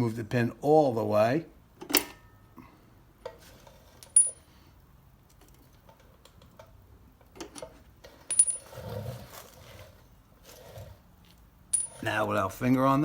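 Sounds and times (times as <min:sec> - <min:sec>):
small metal parts clinking: 0:03.9 - 0:04.5, 0:07.4 - 0:08.8, 0:11.7 - 0:12.3
handling rustle: 0:08.0 - 0:12.2.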